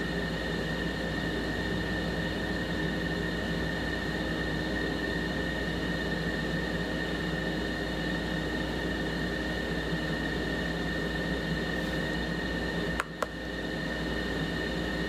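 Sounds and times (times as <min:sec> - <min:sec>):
background hum and hiss: 0:00.0 - 0:15.0.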